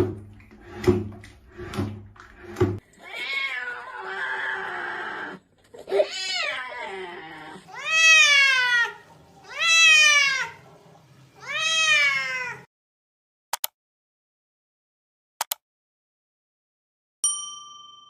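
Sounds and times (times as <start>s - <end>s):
cat meowing: 3.0s - 10.6s, 11.4s - 12.7s.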